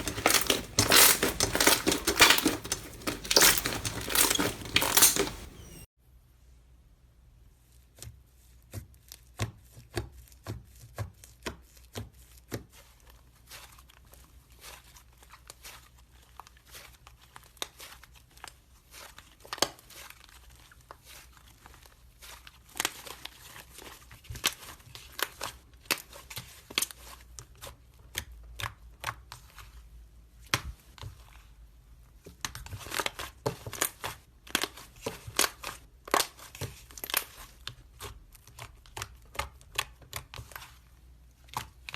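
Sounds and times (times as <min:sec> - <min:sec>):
slime popping and crackling: 0:00.0 - 0:05.8.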